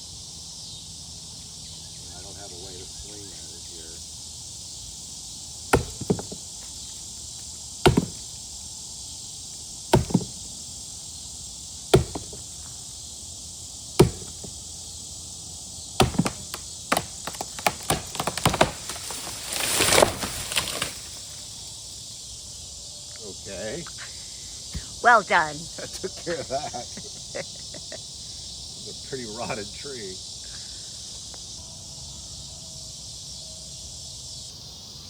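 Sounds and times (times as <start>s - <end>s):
wood splintering: 5.6s - 6.8s, 7.8s - 8.4s, 9.9s - 10.6s, 11.9s - 12.7s, 14.0s - 14.7s, 15.9s - 21.4s
hand tool striking rotten wood: 5.7s - 6.4s, 7.8s - 8.3s, 9.9s - 10.4s, 11.9s - 12.5s, 14.0s - 14.6s, 16.0s - 21.2s.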